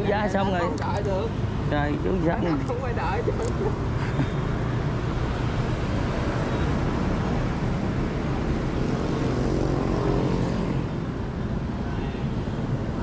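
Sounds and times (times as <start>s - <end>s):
motorbike street traffic: 0.0s - 13.0s.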